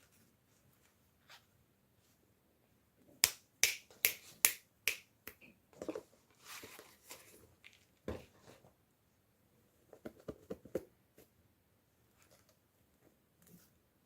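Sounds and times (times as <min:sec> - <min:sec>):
soft rustling: 0:05.8 - 0:08.8.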